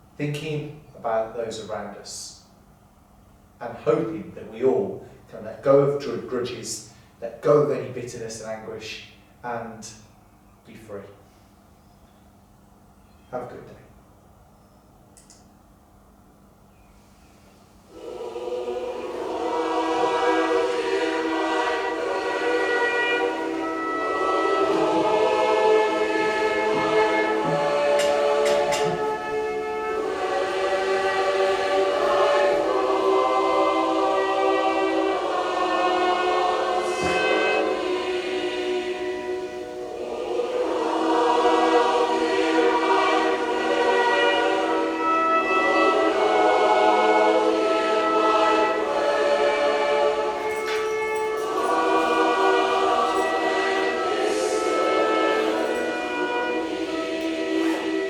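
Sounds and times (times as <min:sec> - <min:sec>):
choir singing sustained chords: 0:16.7 - 0:58.0.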